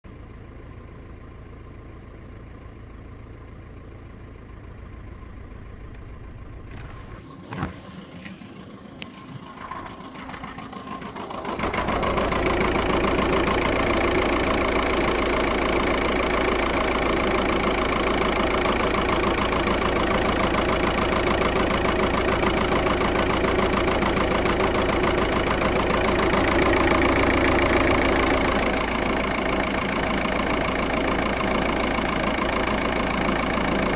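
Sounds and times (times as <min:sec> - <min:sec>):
car engine idling: 0:00.1 - 0:33.9.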